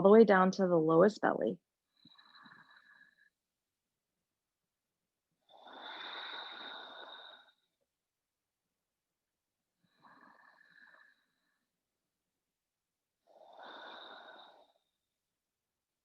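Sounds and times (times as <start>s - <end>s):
person breathing deeply: 5.6s - 7.6s, 13.5s - 14.7s.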